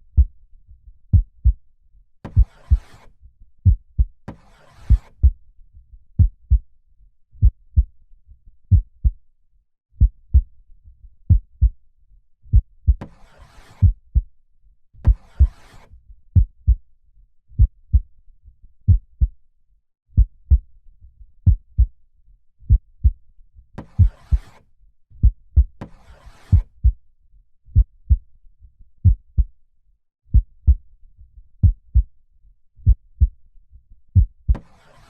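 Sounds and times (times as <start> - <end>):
heartbeat double thump: 18.9 - 19.3, 20.2 - 20.6, 30.3 - 30.8, 31.6 - 32.0.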